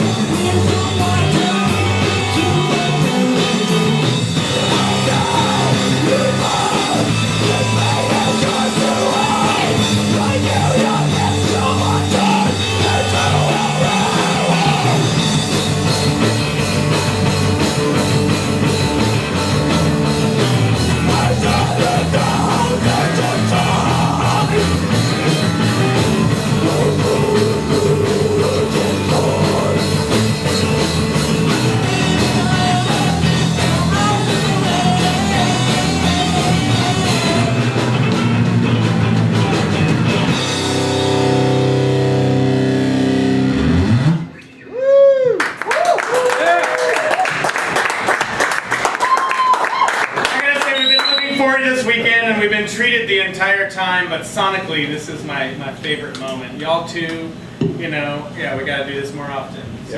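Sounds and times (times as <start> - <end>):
drum kit beat: 0.0 - 43.3
rock band playing loud: 0.0 - 44.6.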